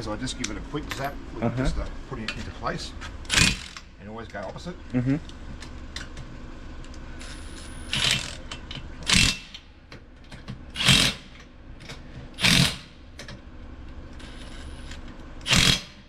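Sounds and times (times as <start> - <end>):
impact wrench zaps: 3.3 - 3.9, 7.2 - 9.7, 10.7 - 11.5, 12.4 - 13.0, 14.2 - 16.0.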